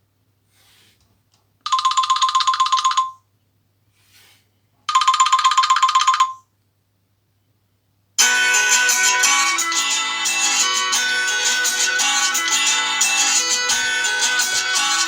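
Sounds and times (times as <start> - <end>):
trilling phone ringtone: 1.7 - 3.2, 4.9 - 6.5, 8.2 - 15.0.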